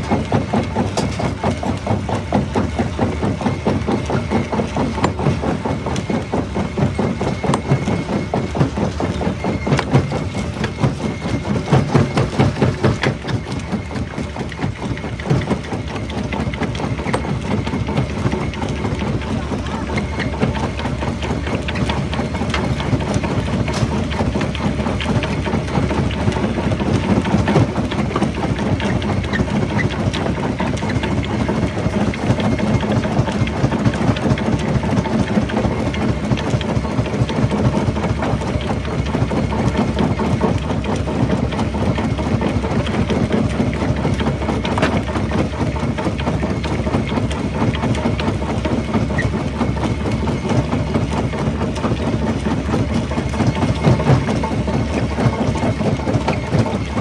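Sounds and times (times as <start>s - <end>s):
low machine drone: 0.0s - 29.2s
rock crushing clatter: 0.1s - 57.0s.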